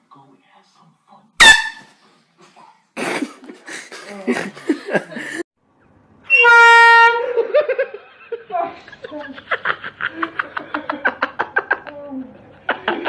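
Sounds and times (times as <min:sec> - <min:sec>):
air horn blaring: 0:01.4 - 0:02.0, 0:06.2 - 0:07.4.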